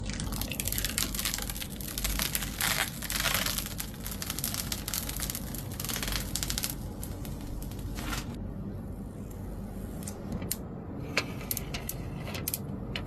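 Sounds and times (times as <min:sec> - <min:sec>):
rapid clicking and crinkling: 0:00.0 - 0:08.4.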